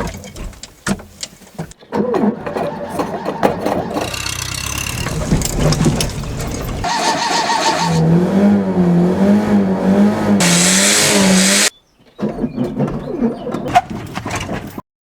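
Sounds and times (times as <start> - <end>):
starter cranking engine: 2.2 - 8.0.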